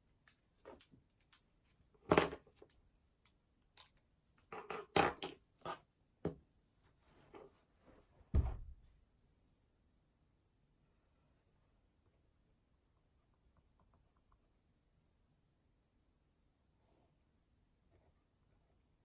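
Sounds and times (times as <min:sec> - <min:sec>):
heavy thump: 0:08.3 - 0:08.9.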